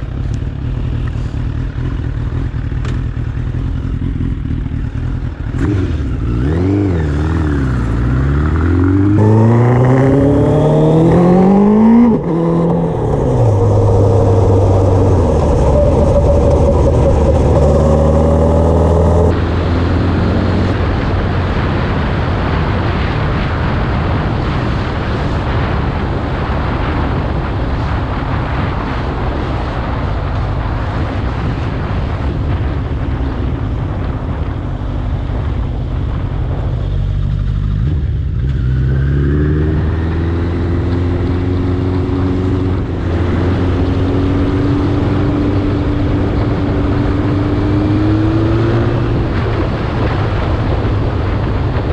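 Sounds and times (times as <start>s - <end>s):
motorcycle engine accelerating: 0.0s - 51.9s
wind noise rushing: 5.5s - 51.9s.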